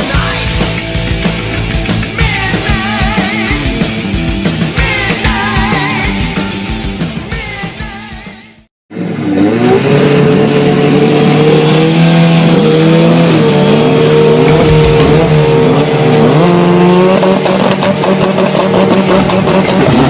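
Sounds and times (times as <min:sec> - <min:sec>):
racing car engines revving: 0:08.9 - 0:20.0.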